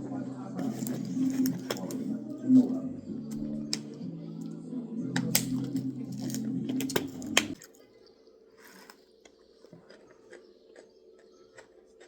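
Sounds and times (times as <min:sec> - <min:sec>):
eating crunches: 0:00.6 - 0:02.7, 0:05.1 - 0:12.0.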